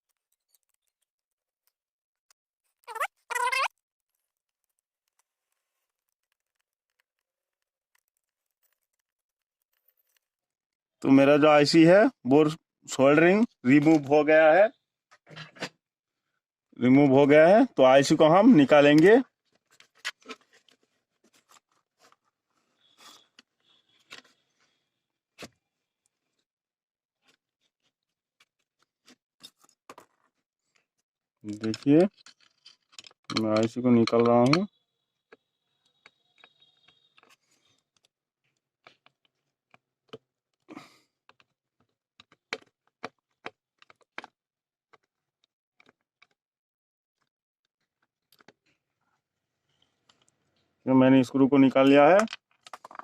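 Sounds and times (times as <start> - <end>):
small tools clicking and scraping: 4.0 - 10.6, 28.4 - 34.7, 52.2 - 53.0.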